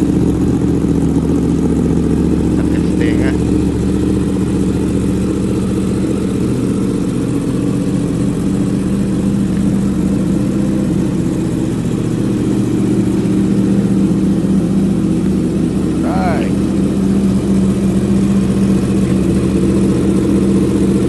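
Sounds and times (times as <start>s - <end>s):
motorcycle engine idling: 0.0s - 21.0s.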